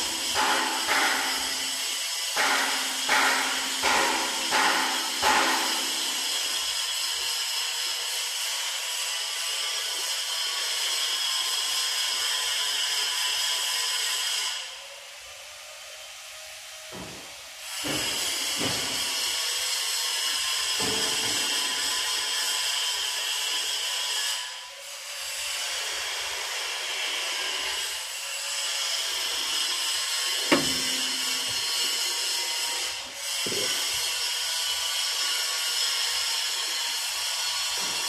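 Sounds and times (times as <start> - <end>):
knocks: 30.5 - 32.0.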